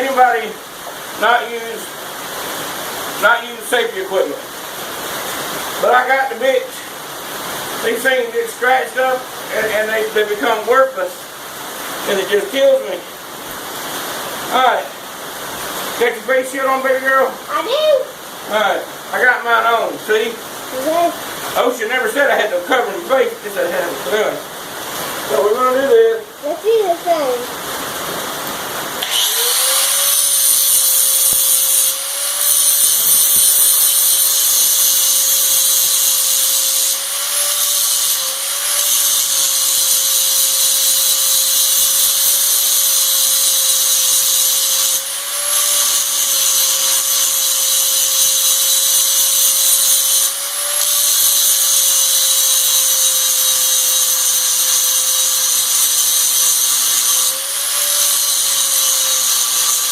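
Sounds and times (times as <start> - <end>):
grinder grinding steel: 29.0 - 59.9.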